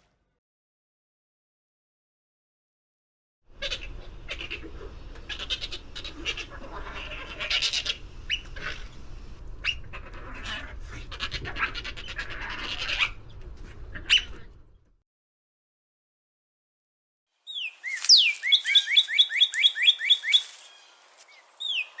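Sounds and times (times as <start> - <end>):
otters chirping and squeaking: 17.5 - 22.0.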